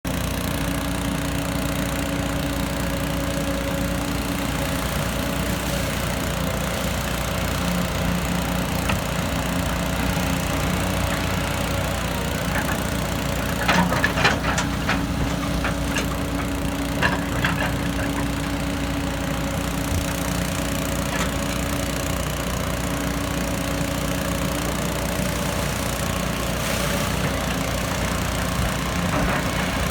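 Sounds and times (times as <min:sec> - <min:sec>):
excavator diesel engine running: 0:00.1 - 0:29.9
sharp knocks and scrapes: 0:12.4 - 0:18.4.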